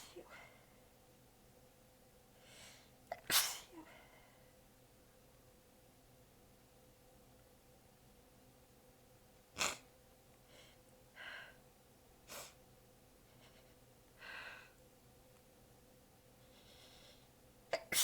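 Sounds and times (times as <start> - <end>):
woman's stifled sneezes: 3.1 - 3.9, 17.8 - 18.0.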